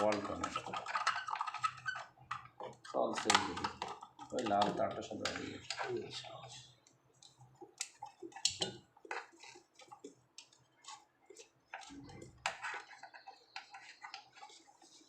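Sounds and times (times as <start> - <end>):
small parts and tools clicking: 0.0 - 6.2.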